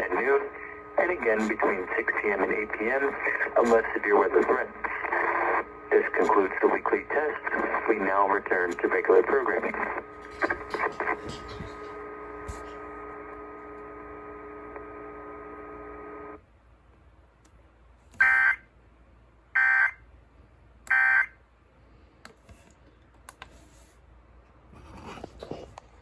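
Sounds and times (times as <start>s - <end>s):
steady hum of held tones: 0.0s - 23.3s
emergency alert data tones: 20.9s - 21.3s.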